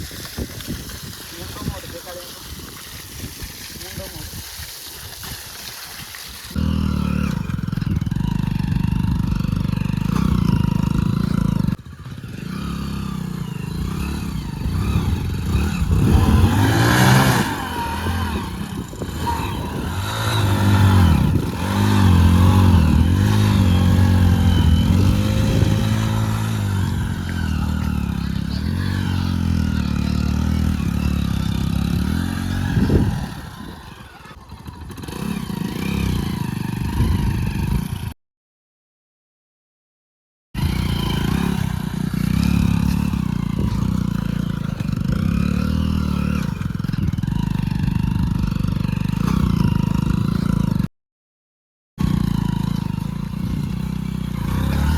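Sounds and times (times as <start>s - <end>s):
motorcycle engine revving: 6.5s - 38.2s, 40.6s - 50.9s, 52.0s - 54.9s
engine clatter: 6.6s - 38.0s.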